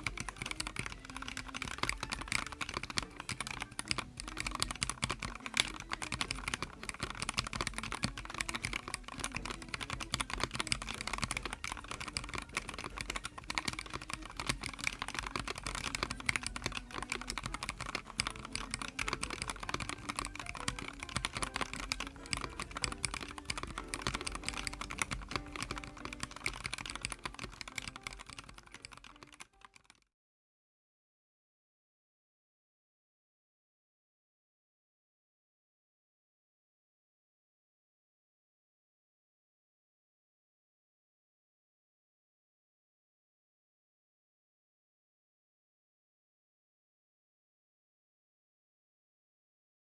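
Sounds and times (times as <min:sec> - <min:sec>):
fast typing on mechanical keyboard: 0:00.0 - 0:30.0.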